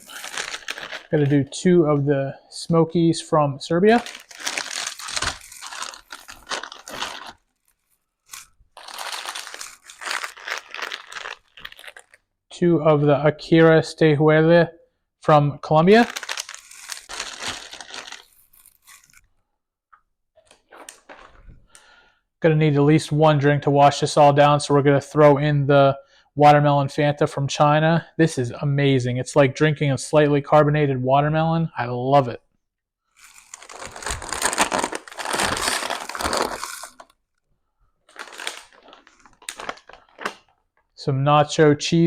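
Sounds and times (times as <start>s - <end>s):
plastic packaging crackling: 0.0s - 1.5s, 3.8s - 12.2s, 15.9s - 19.3s, 33.1s - 37.2s, 38.1s - 40.9s.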